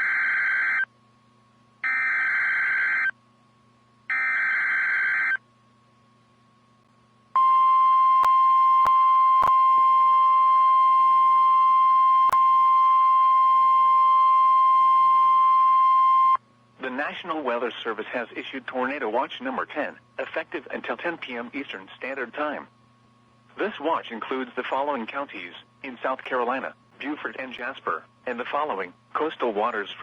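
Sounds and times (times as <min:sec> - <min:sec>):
steady warning alarm tone: 0:01.8 - 0:03.1, 0:04.1 - 0:05.4, 0:07.4 - 0:16.4
sharp static clicks: 0:26.0 - 0:27.8.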